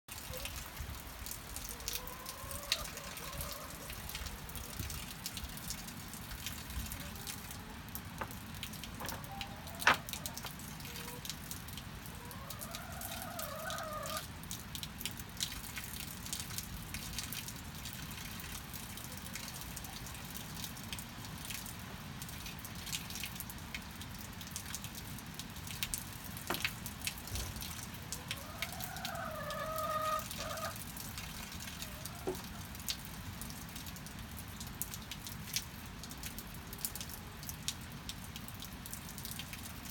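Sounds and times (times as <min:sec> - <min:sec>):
steady rain: 0:00.1 - 0:39.9
water dripping: 0:00.1 - 0:39.9
drawn-out chicken calls: 0:01.6 - 0:05.0, 0:06.8 - 0:11.4, 0:12.0 - 0:14.3, 0:28.0 - 0:32.8.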